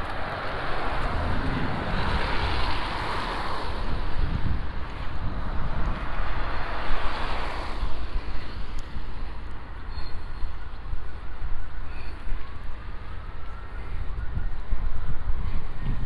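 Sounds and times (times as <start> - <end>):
vehicle passing on snowy road: 0.0 - 9.2
wind rumble on microphone: 0.0 - 16.0.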